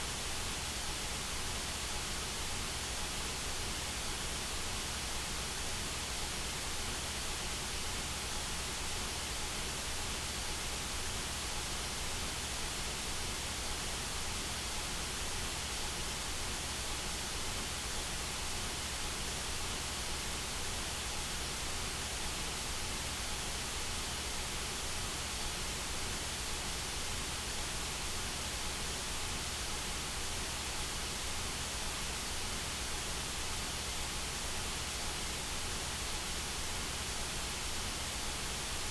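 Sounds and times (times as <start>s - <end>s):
white noise hiss: 0.0s - 38.9s.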